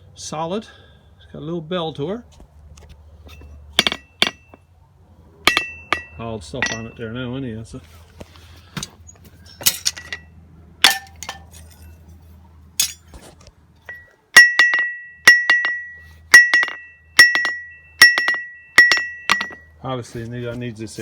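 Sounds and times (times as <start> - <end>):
hammer rebound taps: 3.8 - 4.6, 5.5 - 7.0, 13.9 - 19.6
hammer ringing on anvil: 3.8 - 4.6, 5.5 - 7.1, 10.9 - 11.6, 13.9 - 19.7.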